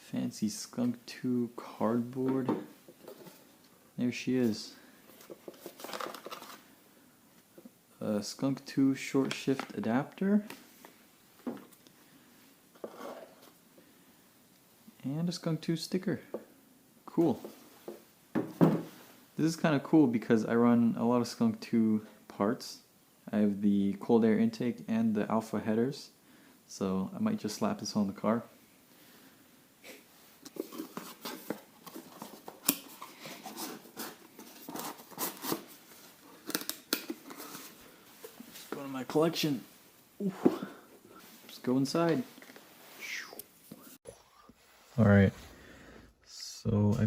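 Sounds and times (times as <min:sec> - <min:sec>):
cardboard packaging handling: 0:30.5 - 0:38.8.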